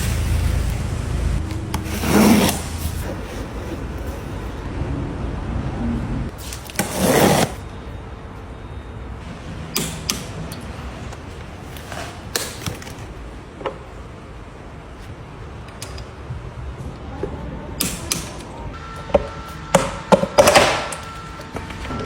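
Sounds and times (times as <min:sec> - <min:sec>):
loud rustling scrape: 0:01.7 - 0:04.7, 0:06.3 - 0:07.6.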